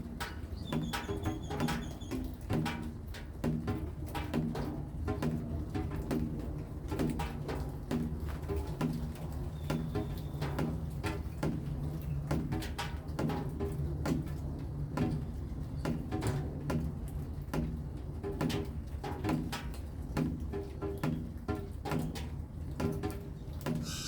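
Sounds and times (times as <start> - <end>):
heavy raindrops tapping: 0.0 - 14.4.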